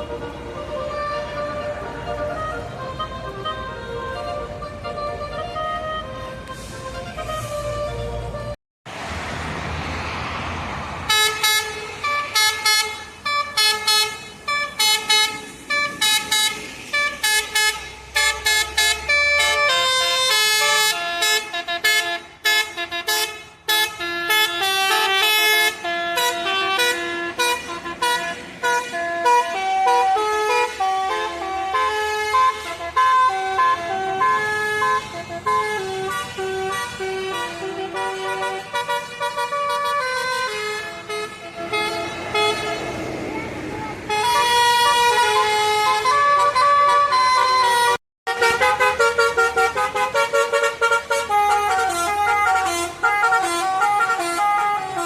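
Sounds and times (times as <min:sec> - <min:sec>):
bus air horns playing tune: 0:00.0 - 0:08.6, 0:11.1 - 0:55.0
bus engine rumbling: 0:00.0 - 0:55.0.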